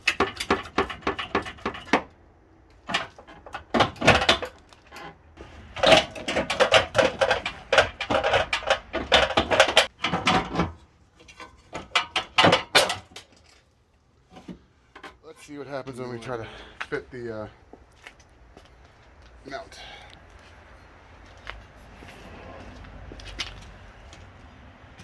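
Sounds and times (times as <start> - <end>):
hand tools clicking and clanking on metal: 0.0 - 17.0.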